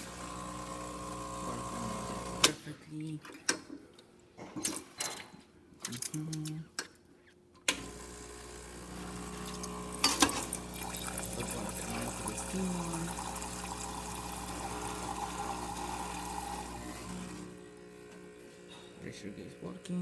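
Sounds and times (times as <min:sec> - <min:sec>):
espresso pump humming: 0:00.0 - 0:02.5, 0:07.8 - 0:20.0
water flowing: 0:09.4 - 0:16.8.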